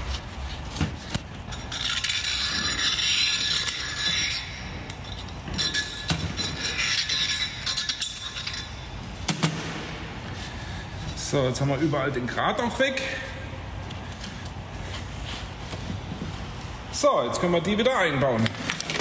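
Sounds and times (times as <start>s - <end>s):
hand sanding metal: 0.0s - 4.9s.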